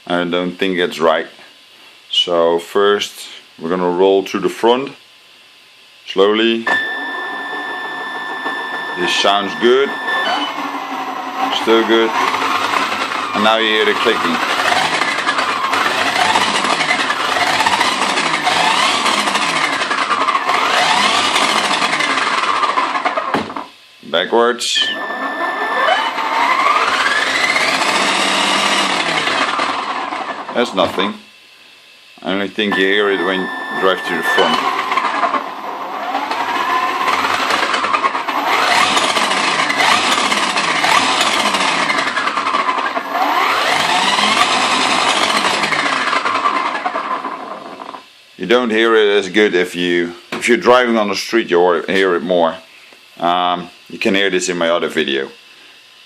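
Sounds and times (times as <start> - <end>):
electric motor whine: 6.7 - 23.6, 24.8 - 30.5, 32.6 - 48.0.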